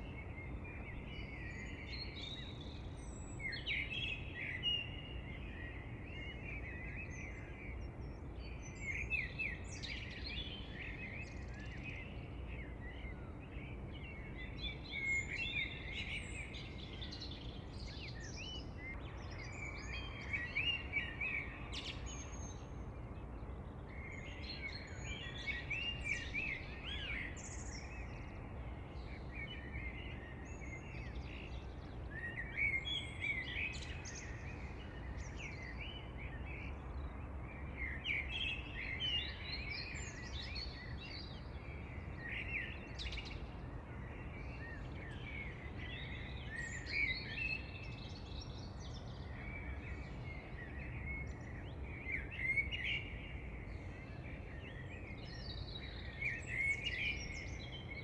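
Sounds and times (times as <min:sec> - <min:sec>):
low background noise: 0:00.0 - 0:58.0.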